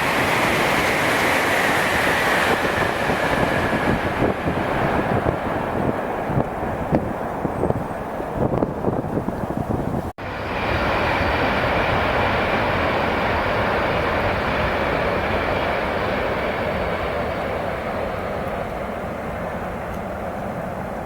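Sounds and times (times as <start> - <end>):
train rushing past: 0.0 - 8.5, 10.2 - 21.0
wind buffeting microphone: 0.0 - 21.0.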